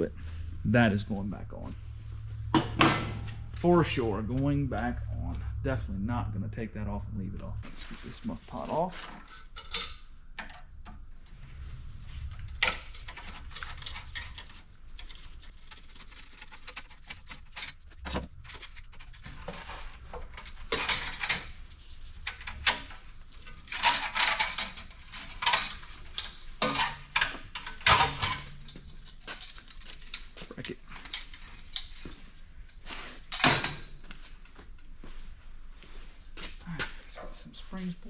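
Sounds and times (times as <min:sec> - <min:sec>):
metal scraping: 0:00.0 - 0:10.3, 0:11.0 - 0:32.4
metal clinking and clanking: 0:08.6 - 0:34.0.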